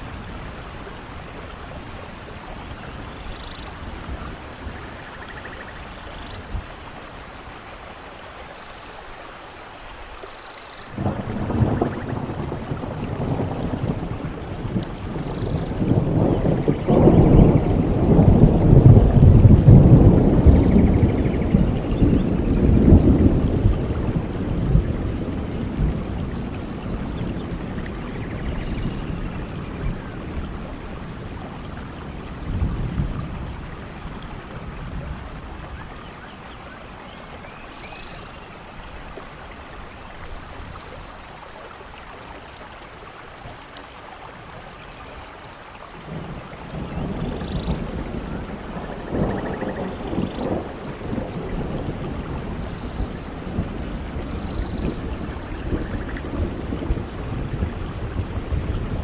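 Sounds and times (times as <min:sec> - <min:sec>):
steady rain: 0:00.0 - 0:59.0
thunder rumbling: 0:10.9 - 0:41.1, 0:46.0 - 0:59.0.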